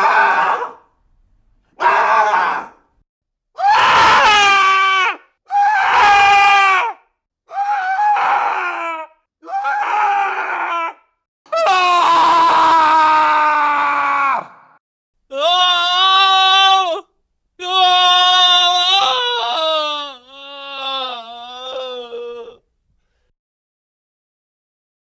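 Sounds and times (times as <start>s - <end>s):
man screaming: 3.6s - 14.7s, 15.3s - 22.6s.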